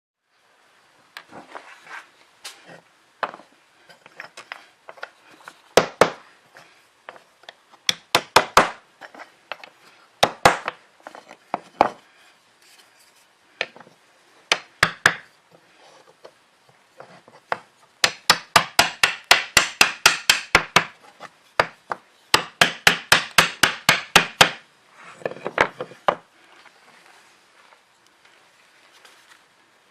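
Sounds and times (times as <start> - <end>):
sharp wooden knocks and taps: 7.8 - 8.8, 9.5 - 10.8, 14.5 - 15.3, 17.5 - 20.9, 21.6 - 24.6.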